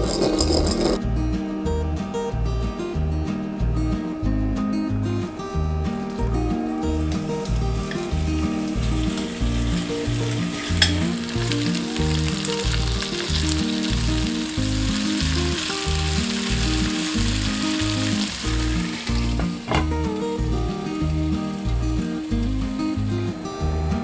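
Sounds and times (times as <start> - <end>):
background music with bass line: 0.0 - 24.0
chicken sizzling in a pan: 6.0 - 24.0.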